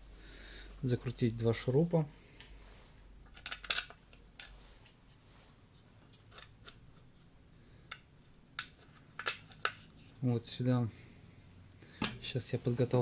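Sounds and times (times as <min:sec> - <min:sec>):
clicks and taps of small parts: 0:07.9 - 0:09.8.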